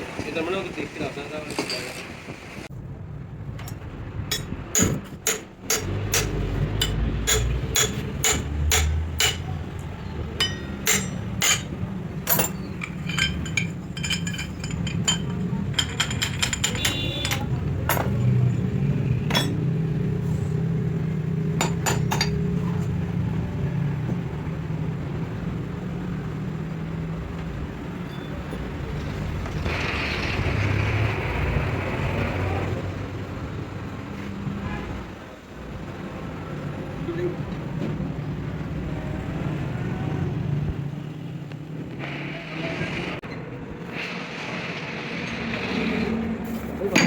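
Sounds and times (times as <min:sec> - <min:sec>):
hammer striking metal: 0:03.7 - 0:18.3, 0:19.2 - 0:19.6, 0:21.6 - 0:22.5
ringing metallic clinks: 0:10.4 - 0:17.5.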